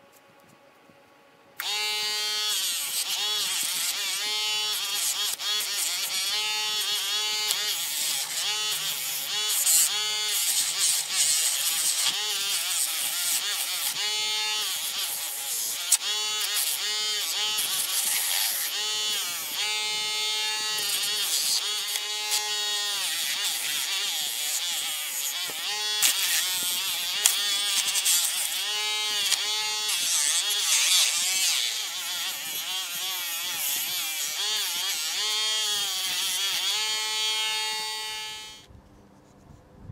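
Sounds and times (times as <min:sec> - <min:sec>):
small motor buzzing: 0:01.6 - 0:38.7.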